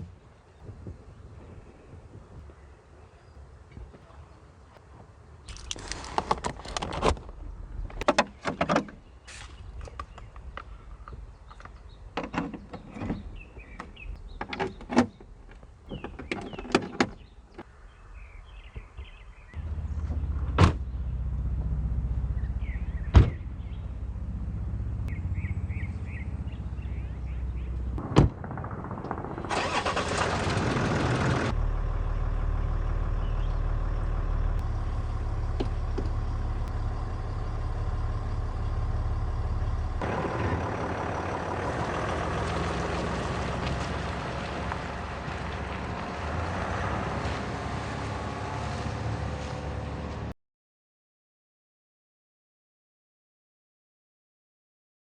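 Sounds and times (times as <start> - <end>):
car engine starting and idling: 19.6 - 48.1.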